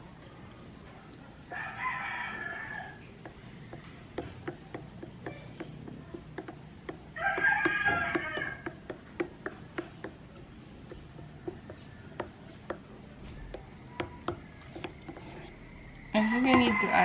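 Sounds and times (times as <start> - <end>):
rooster crowing: 1.5 - 3.1, 7.1 - 8.8, 16.1 - 17.0
stirrer clicking against plastic: 3.2 - 15.6.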